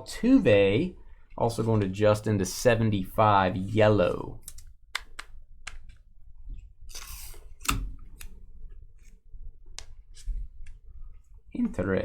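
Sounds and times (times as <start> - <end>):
cards clicking and snapping: 4.4 - 6.0.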